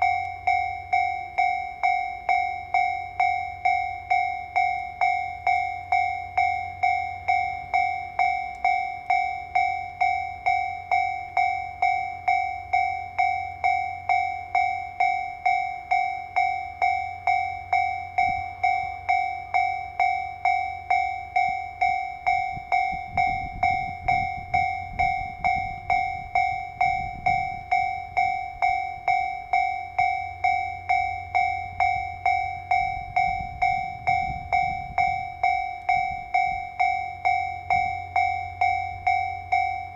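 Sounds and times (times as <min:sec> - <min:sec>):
level-crossing warning bell: 0:00.0 - 0:39.9
train rumble: 0:22.0 - 0:39.9.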